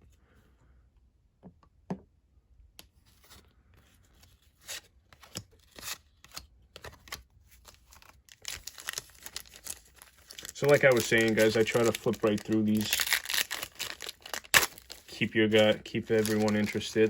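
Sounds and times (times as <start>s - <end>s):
cardboard cards flipped by hand: 2.8s - 9.4s.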